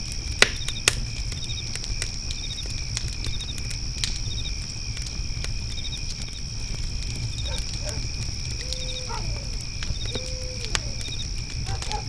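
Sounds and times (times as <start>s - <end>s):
crickets chirping: 0.0s - 12.0s
high insect trill: 0.0s - 12.0s
wood fire crackling and popping: 0.0s - 12.0s
faint hoot-like animal calls: 7.4s - 12.0s.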